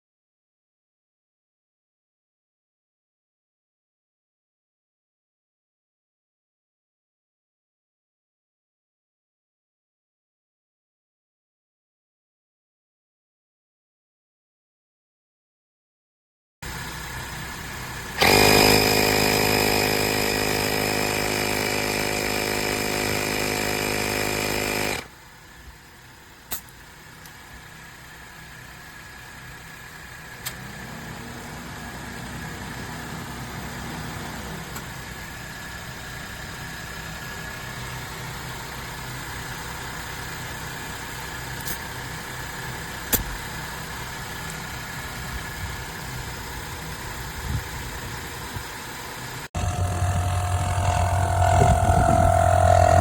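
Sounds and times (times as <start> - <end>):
air compressor buzzing drone: 16.7 - 25.1, 49.5 - 53.0
faint steady hum: 49.6 - 53.0.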